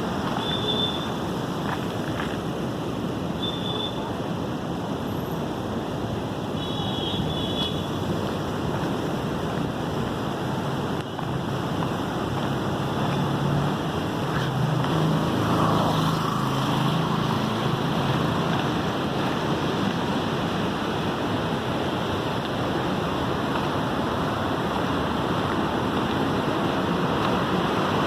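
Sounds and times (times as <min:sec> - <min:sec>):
floodwater rushing: 0:00.0 - 0:28.0.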